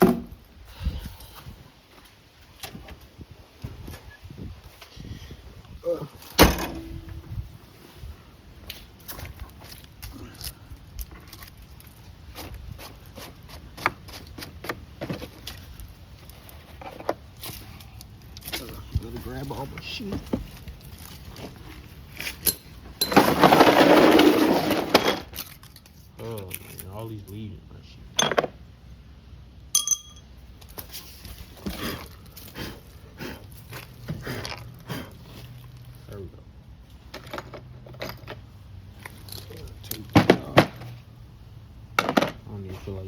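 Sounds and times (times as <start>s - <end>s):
rustles and light knocks: 8.6s - 23.6s
tools knocking and clinking: 28.2s - 28.5s, 29.7s - 30.3s.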